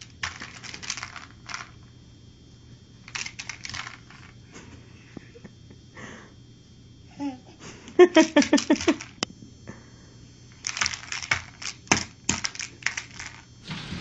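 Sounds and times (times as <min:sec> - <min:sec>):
toys clicking and rattling: 0:00.0 - 0:01.8, 0:03.1 - 0:04.3, 0:10.6 - 0:13.4.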